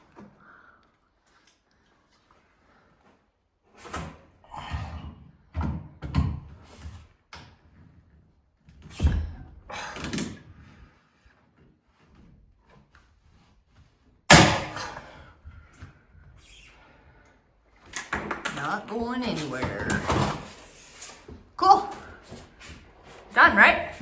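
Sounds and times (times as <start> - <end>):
loud sharp metal bang: 14.3 - 15.0.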